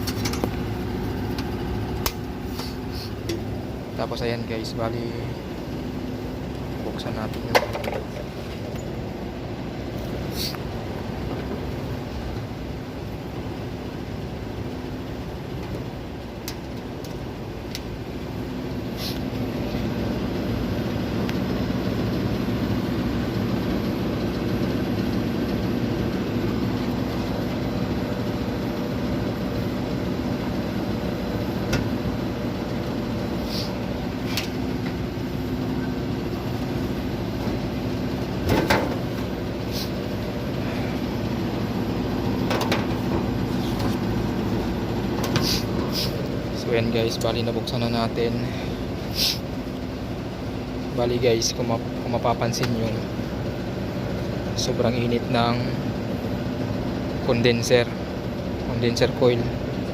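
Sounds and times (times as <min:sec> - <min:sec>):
low mechanical hum: 0:00.0 - 0:59.9.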